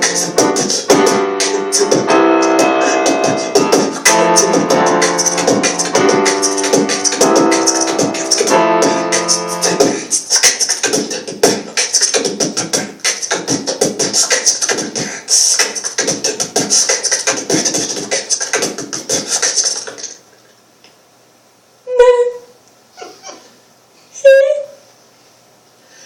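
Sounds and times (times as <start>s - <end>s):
sustained chords: 0.0s - 9.9s
fast rhythmic percussive beat: 0.0s - 20.1s
hissing hi-hat: 0.0s - 20.2s.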